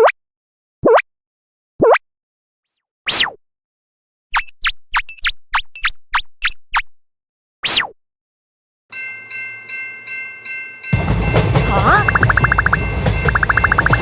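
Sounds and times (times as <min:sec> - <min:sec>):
electronic alarm bell ringing: 0:11.7 - 0:14.0
short falling blips: 0:12.0 - 0:14.0.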